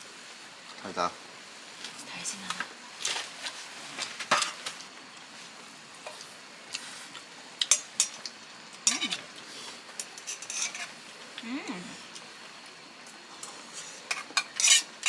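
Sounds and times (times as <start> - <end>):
background hiss: 0.0 - 15.0
utensils clinking on dishes: 4.0 - 4.8, 7.6 - 9.4, 10.0 - 11.0, 13.4 - 15.0.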